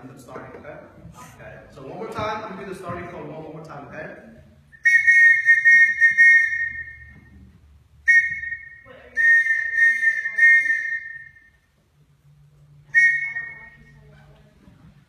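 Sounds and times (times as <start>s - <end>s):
whistle blasts: 4.7s - 7.4s, 8.0s - 11.7s, 12.8s - 14.0s.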